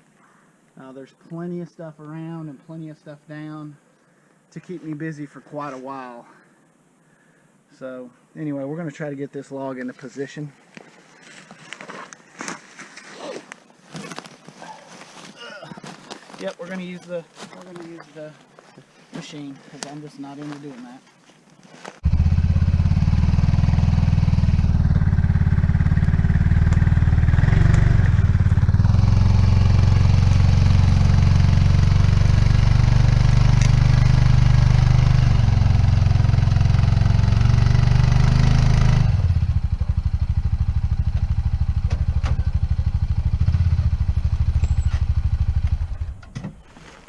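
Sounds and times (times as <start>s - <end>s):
machine engine rumbling: 22.0s - 36.8s.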